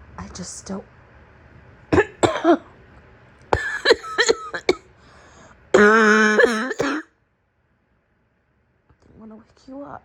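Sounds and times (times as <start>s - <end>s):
woman coughing: 2.0s - 2.7s, 3.6s - 4.8s, 5.8s - 7.1s
held voiced sound: 5.8s - 7.0s.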